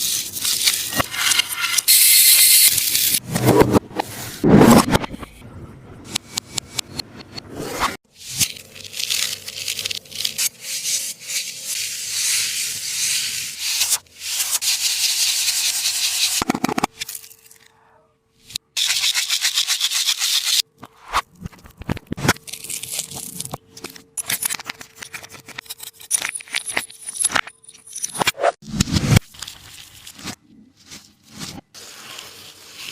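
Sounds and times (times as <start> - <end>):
paper toy rubbing and crinkling: 8.2 - 16.8, 29.3 - 32.9.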